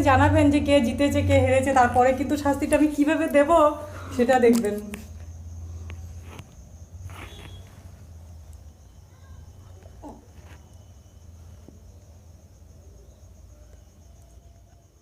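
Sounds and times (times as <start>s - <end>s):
faint rustles and clicks: 4.4s - 8.7s, 9.6s - 10.9s.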